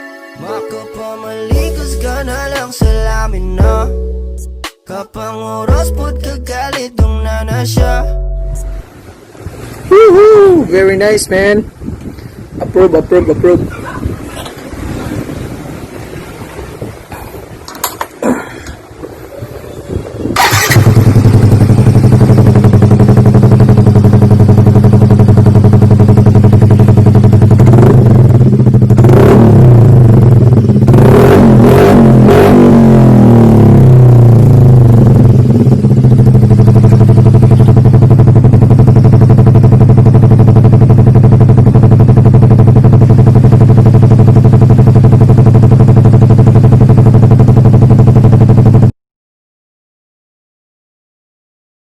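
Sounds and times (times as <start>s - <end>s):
scooter engine idling and revving: 10.7s - 49.0s.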